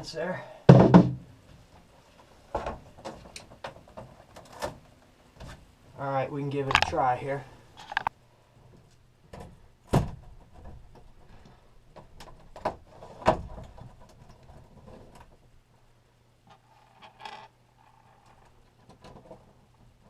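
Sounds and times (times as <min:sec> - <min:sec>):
knocks and clunks on wood: 0:00.7 - 0:01.2
loud thumps: 0:00.7 - 0:01.3.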